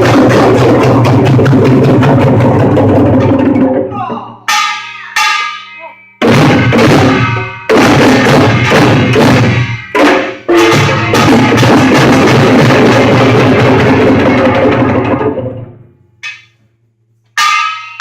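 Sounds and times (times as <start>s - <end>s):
percussion ensemble playing: 0.0s - 18.0s
ringing gongs: 4.4s - 12.1s, 17.4s - 18.0s.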